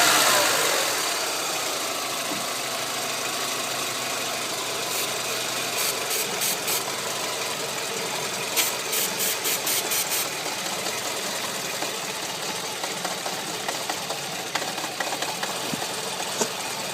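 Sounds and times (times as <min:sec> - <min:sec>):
car engine idling: 0:00.0 - 0:16.9
short hissing bursts: 0:04.9 - 0:05.2, 0:05.8 - 0:06.8, 0:08.6 - 0:10.3.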